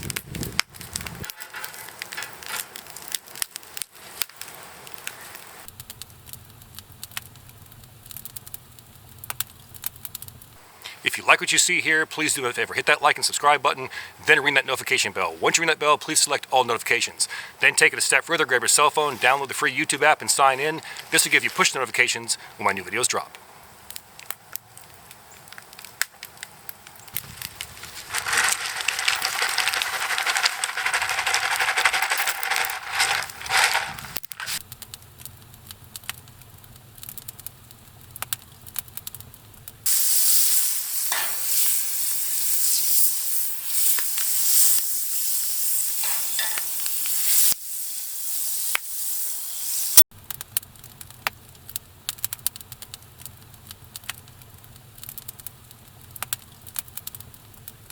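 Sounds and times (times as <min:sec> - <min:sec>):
quiet crackles and clicks: 0:00.0 - 0:11.0, 0:23.1 - 0:39.9, 0:50.2 - 0:57.9
food sizzling in a hot pan: 0:39.9 - 0:50.0.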